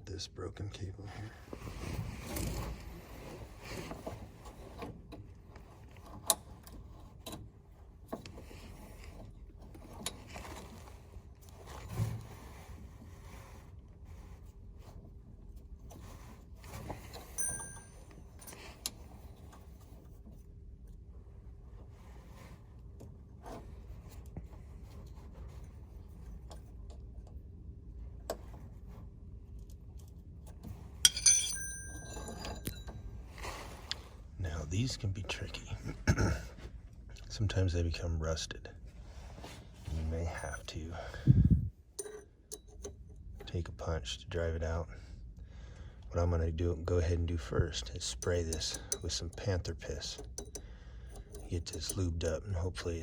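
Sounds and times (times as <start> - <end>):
metallic clicks and clinks: 31.1 - 33.0, 42.0 - 43.0
faint clicks and taps on metal: 48.1 - 52.1.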